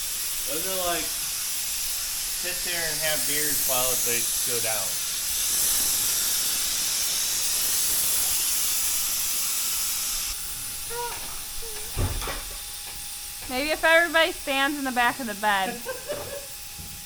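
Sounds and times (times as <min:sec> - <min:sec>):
air hissing out of tire: 0:00.0 - 0:11.0
dull thump: 0:11.2 - 0:12.6.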